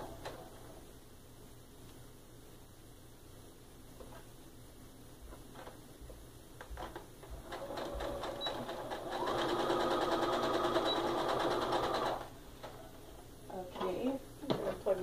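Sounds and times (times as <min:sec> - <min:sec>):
sewing machine stitching: 0:07.4 - 0:12.3.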